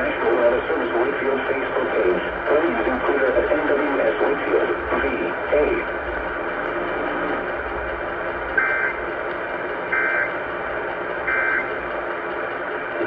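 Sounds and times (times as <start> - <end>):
radio noise hiss: 0.0 - 6.0
two-tone digital squawks: 9.9 - 10.3, 11.3 - 11.7.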